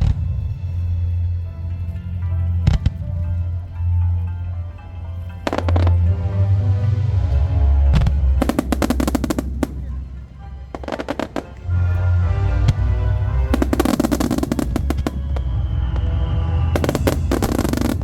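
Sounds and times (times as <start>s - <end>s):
bass-heavy music: 0.0s - 18.0s
firework cracks and bursts: 8.4s - 10.2s, 13.6s - 15.6s, 16.8s - 18.0s.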